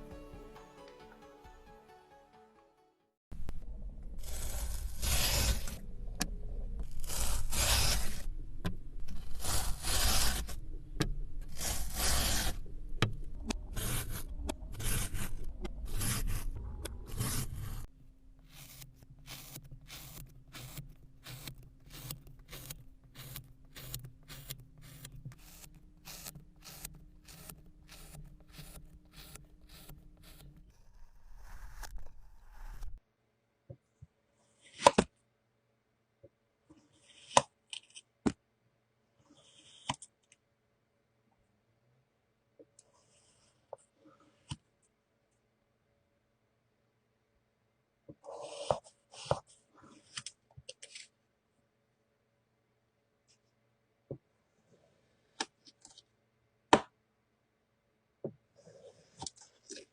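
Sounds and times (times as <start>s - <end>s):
knife scraping through sand: 4.2s - 5.8s, 7.0s - 8.3s, 9.2s - 10.6s, 11.5s - 12.6s, 13.8s - 16.5s, 17.1s - 33.0s.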